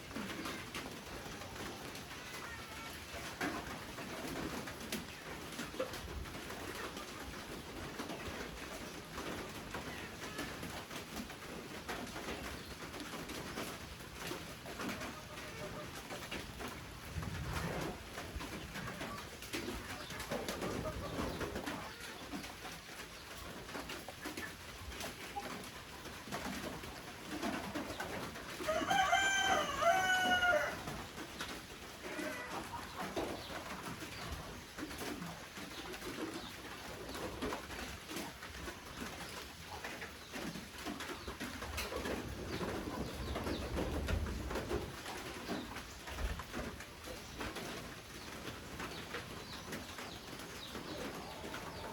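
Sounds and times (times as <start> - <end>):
light rain patter: 0.0 - 51.9
doves cooing: 17.1 - 51.9.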